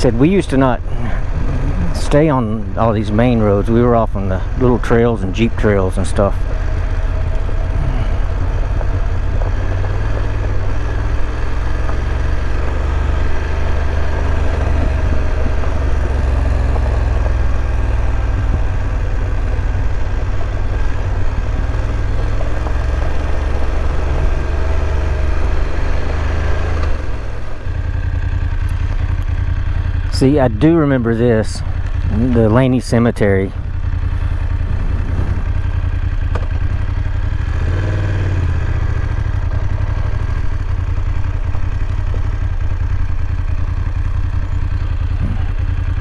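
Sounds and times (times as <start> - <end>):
motorcycle engine rumbling: 0.0 - 46.0.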